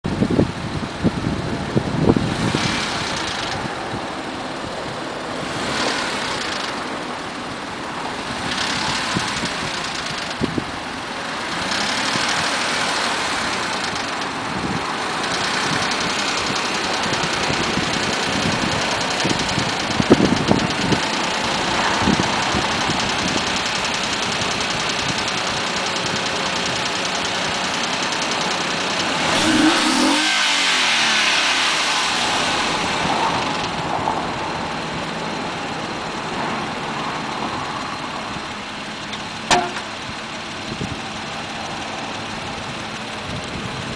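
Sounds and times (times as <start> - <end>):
car engine revving: 0.3 - 43.9
rattling knock: 39.5 - 39.9.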